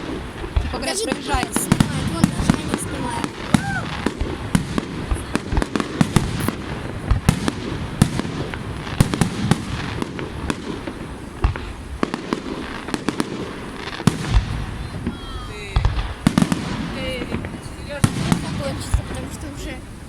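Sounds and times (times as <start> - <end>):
fireworks bangs and crackling pops: 0.0 - 20.0
rumble of fireworks bursts: 0.0 - 20.0.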